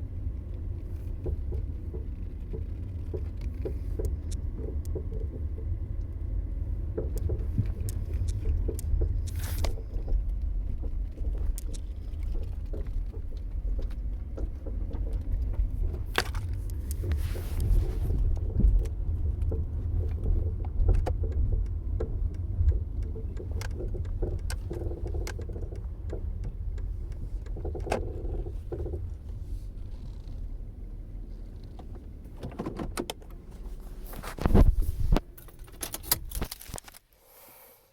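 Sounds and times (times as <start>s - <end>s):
car road rumble: 0.0s - 37.0s
knocks and rattles: 1.1s - 30.4s.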